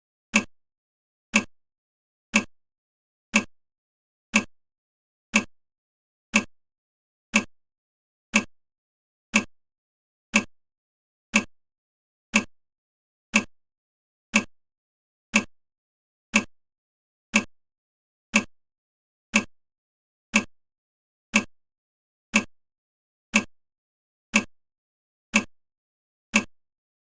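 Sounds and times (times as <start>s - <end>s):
timer ticking: 0.3s - 0.5s, 1.3s - 1.5s, 2.3s - 2.6s, 3.3s - 3.6s, 4.3s - 4.6s, 5.3s - 5.6s, 6.3s - 6.5s, 7.3s - 7.6s, 8.3s - 8.6s, 9.3s - 9.6s, 10.3s - 10.5s, 11.3s - 11.5s, 12.3s - 12.6s, 13.3s - 13.6s, 14.3s - 14.5s, 15.3s - 15.5s, 16.3s - 16.5s, 17.3s - 17.5s, 18.3s - 18.5s, 19.3s - 19.5s, 20.3s - 20.5s, 21.3s - 21.5s, 22.3s - 22.6s, 23.3s - 23.6s, 24.3s - 24.6s, 25.3s - 25.5s, 26.3s - 26.6s.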